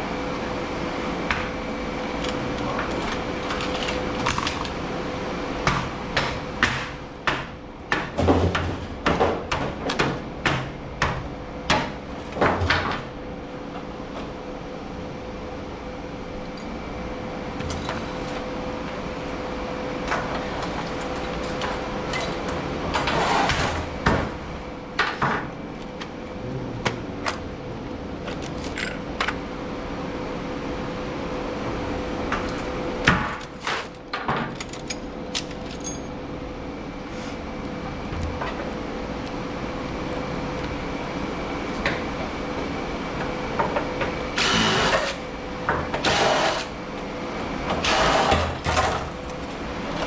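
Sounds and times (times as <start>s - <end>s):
steady hum: 0.0s - 7.9s, 13.1s - 34.1s
metal parts clanking and rattling: 2.2s - 4.8s, 17.6s - 18.9s, 20.1s - 23.9s, 28.2s - 29.5s, 33.4s - 36.2s.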